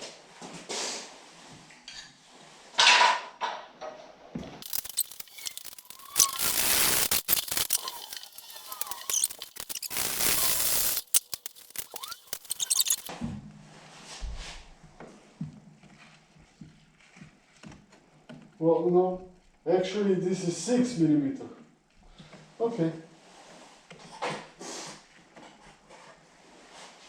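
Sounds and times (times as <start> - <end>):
metal-cutting tool cutting screws: 4.6 - 13.1.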